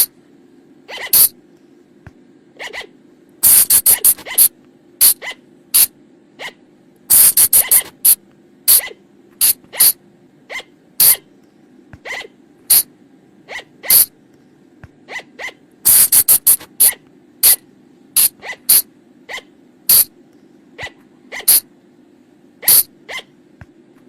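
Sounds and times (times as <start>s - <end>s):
faint steady hum: 0.0s - 24.0s
high-pitched animal squeaks: 0.9s - 1.3s, 2.6s - 2.9s, 3.7s - 6.6s, 7.4s - 8.0s, 8.7s - 11.2s, 12.0s - 12.9s, 13.5s - 14.1s, 15.1s - 17.6s, 18.2s - 20.1s, 20.8s - 21.7s, 22.6s - 23.3s.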